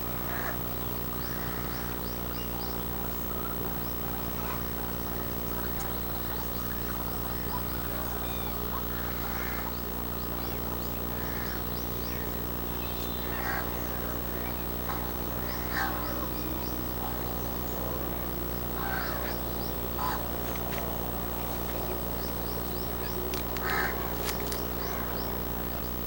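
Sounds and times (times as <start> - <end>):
coots calling: 0.0 - 26.0
steady low hum: 0.0 - 26.0.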